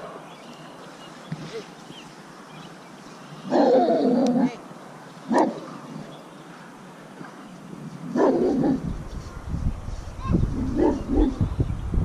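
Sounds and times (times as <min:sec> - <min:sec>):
large dog barking: 0:03.5 - 0:04.6, 0:05.3 - 0:05.9, 0:08.1 - 0:08.9, 0:10.6 - 0:11.4.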